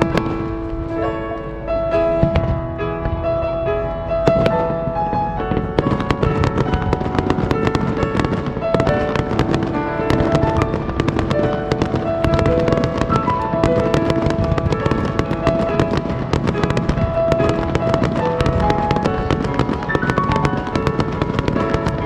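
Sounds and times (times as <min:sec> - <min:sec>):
fireworks crackling: 0:00.0 - 0:22.0
music with clear melody: 0:00.0 - 0:22.0.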